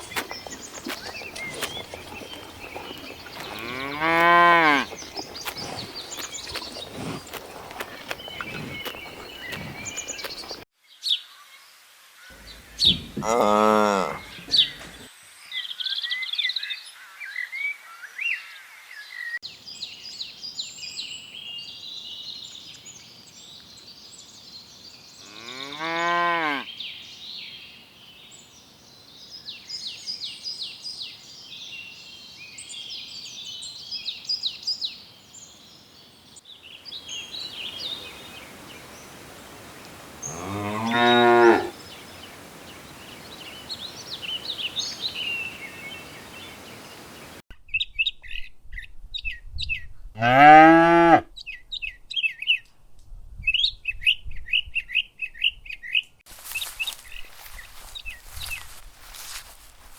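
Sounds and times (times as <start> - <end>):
small birds chirping: 0.0 - 11.3, 12.3 - 16.8, 19.2 - 49.9, 53.5 - 59.9
cow mooing: 3.5 - 5.0, 13.1 - 14.7, 25.3 - 26.6, 40.3 - 41.8, 50.2 - 51.3.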